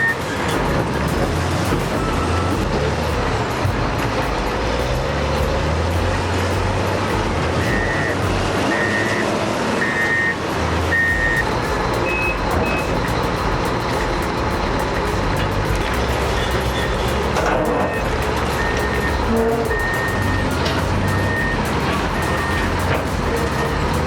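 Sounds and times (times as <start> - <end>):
reversing alarm beeping: 0.0 - 4.5, 7.3 - 24.0
diesel engine rumble: 0.0 - 24.0
short high-pitched beeps: 7.6 - 14.3, 15.3 - 23.8.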